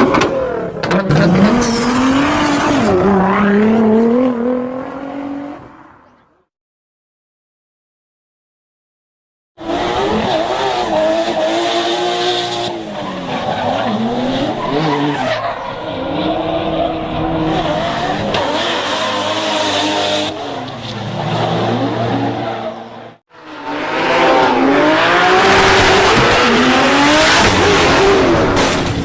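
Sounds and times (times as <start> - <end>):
car engine revving: 0.0 - 5.7, 9.6 - 29.0.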